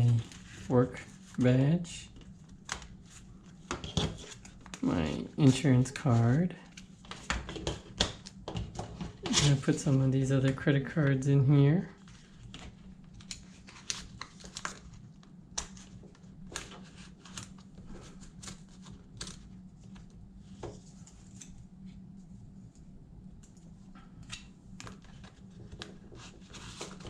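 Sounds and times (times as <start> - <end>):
steady low hum: 0.0 - 27.0
plastic cards clicking and tapping: 7.0 - 8.9.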